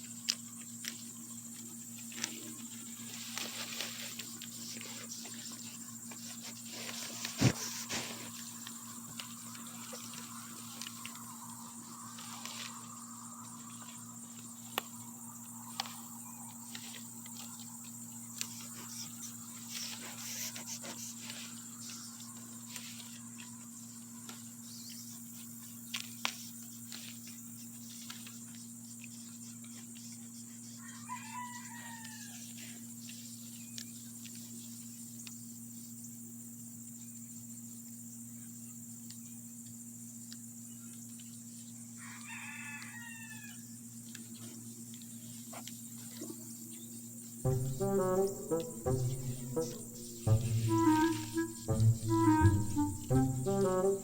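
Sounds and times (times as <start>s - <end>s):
faint rooster crowing: 30.7s - 32.8s, 41.9s - 43.8s
steady high drone: 47.5s - 54.0s.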